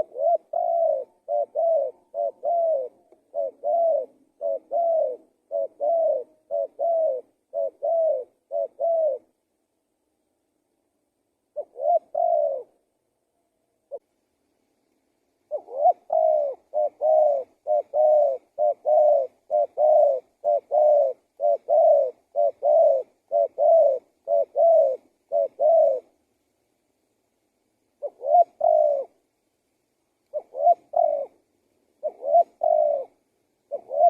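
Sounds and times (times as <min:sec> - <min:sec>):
dove cooing: 0:00.0 - 0:09.4, 0:11.5 - 0:12.9, 0:15.5 - 0:26.2, 0:28.0 - 0:29.2, 0:30.3 - 0:34.0.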